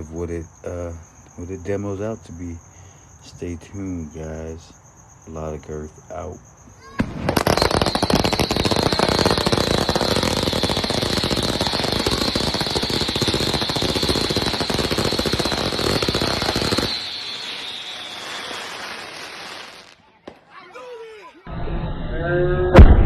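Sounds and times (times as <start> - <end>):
rapid firework barrage: 6.9 - 20.0.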